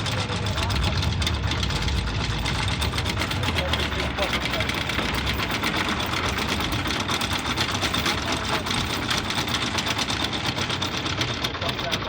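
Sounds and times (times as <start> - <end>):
diesel engine with ticking knock: 0.0 - 12.0.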